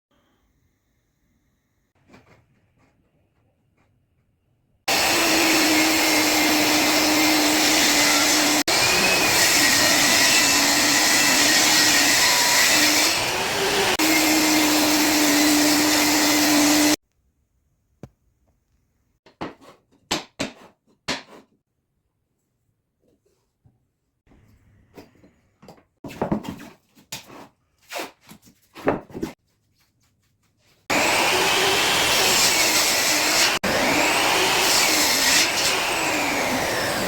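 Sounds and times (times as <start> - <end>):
electric power tool whining: 4.9 - 17.0, 30.9 - 37.0.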